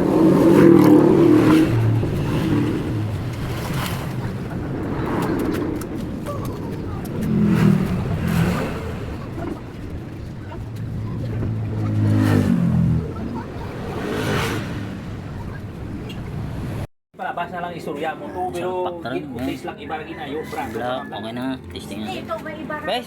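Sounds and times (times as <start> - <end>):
small engine revving: 0.0 - 16.4
background rumble: 0.0 - 16.9.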